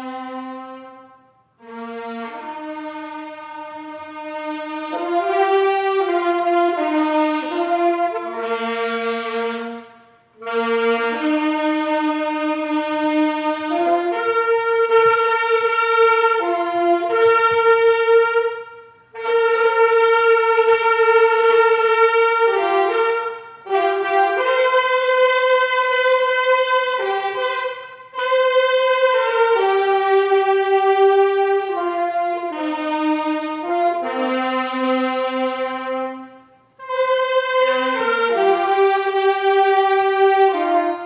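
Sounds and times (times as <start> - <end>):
brass-like wind instrument hymn melody: 0.0 - 41.0.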